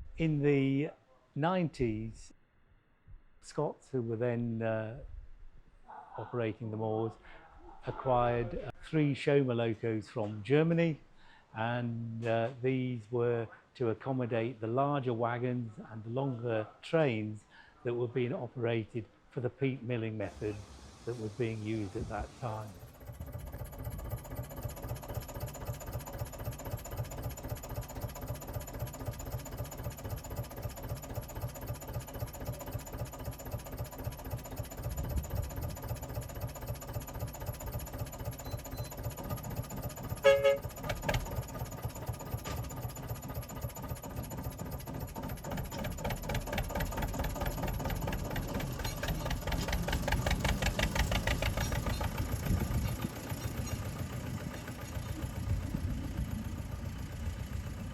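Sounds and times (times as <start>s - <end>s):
diesel locomotive engine running: 20.3s - 57.9s.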